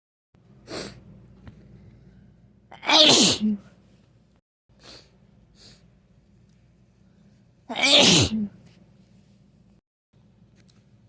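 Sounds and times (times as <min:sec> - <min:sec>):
person sneezing loudly: 0:02.8 - 0:03.7, 0:07.7 - 0:08.6.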